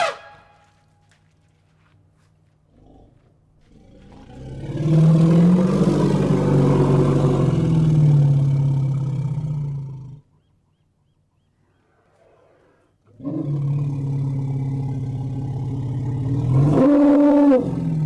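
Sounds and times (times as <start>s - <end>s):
elephant roaring: 3.8s - 10.1s, 11.8s - 18.0s.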